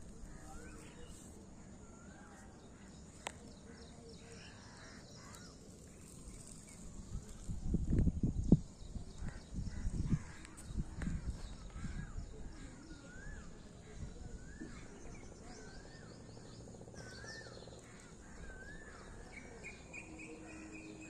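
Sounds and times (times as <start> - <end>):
wind rumble on microphone: 6.1 - 15.8.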